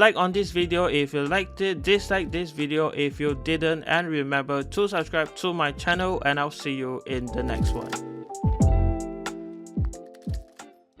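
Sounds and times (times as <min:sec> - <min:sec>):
held chords: 0:07.0 - 0:11.0
drum beat: 0:07.1 - 0:10.7.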